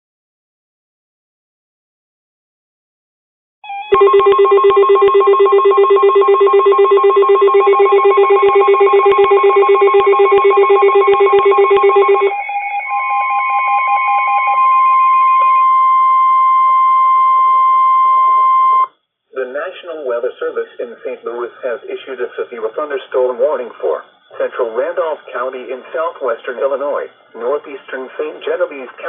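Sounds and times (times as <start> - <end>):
rapidly pulsing alarm tone: 3.6 - 18.9
steady single-pitch alert tone: 3.7 - 18.9.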